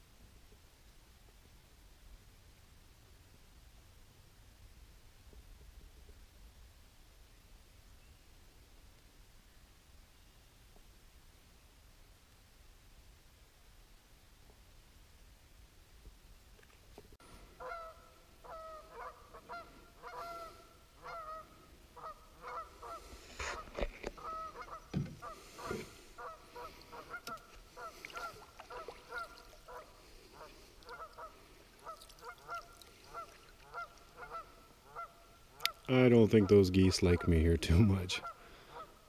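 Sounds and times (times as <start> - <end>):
geese honking: 17.6 - 37.5, 38.1 - 39.0.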